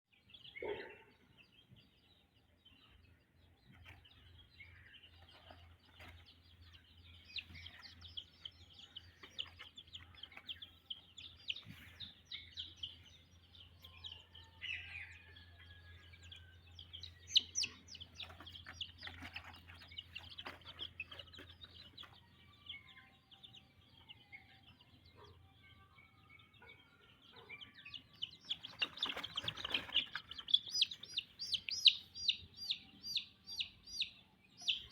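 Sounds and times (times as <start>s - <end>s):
chicks peeping: 0.1s - 34.9s.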